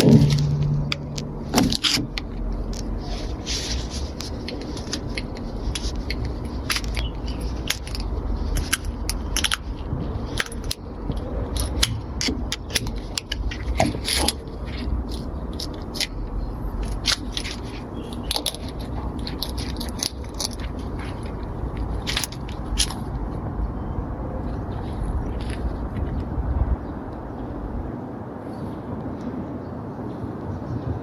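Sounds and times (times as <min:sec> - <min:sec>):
clicks and scrapes of objects: 0:00.0 - 0:23.4
steady low rumble: 0:00.0 - 0:31.0.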